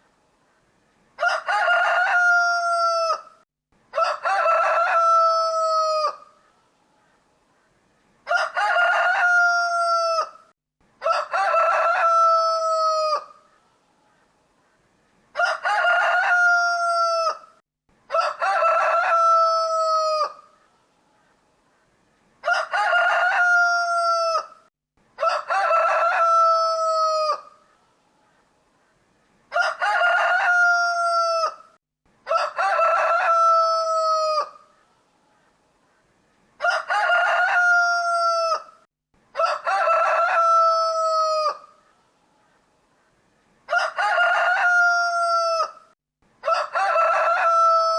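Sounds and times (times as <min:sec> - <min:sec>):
rooster crowing: 0:01.2 - 0:06.3, 0:08.3 - 0:13.4, 0:15.4 - 0:20.5, 0:22.4 - 0:24.6, 0:25.2 - 0:27.6, 0:29.5 - 0:34.7, 0:36.6 - 0:41.8, 0:43.7 - 0:47.9.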